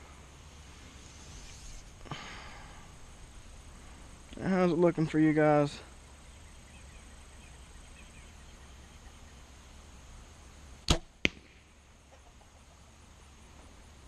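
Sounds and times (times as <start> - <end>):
arrow striking target: 10.8 - 11.7
bowstring snap: 10.8 - 11.7.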